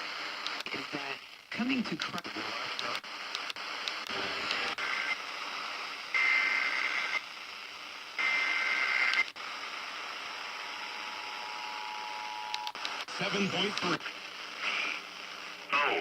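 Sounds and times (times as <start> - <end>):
radio static: 0.0 - 16.0.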